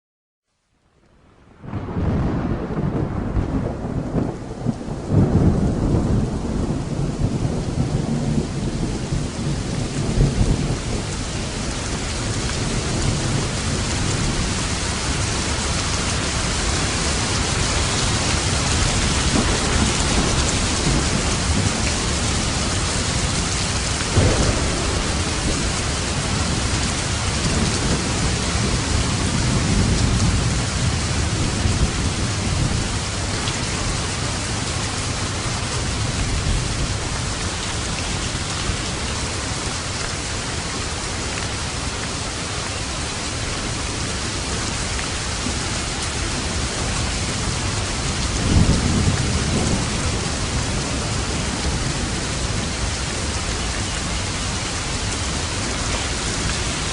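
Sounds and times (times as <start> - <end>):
heavy rain: 0.5 - 56.9
sharp thunderclap: 1.6 - 11.2, 16.8 - 33.1, 48.1 - 51.9
thunder rumbling: 1.6 - 39.6, 43.6 - 56.9.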